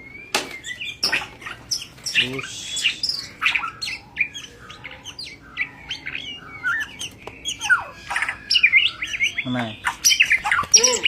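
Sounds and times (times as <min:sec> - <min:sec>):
birds chirping and whistling: 0:00.0 - 0:11.0.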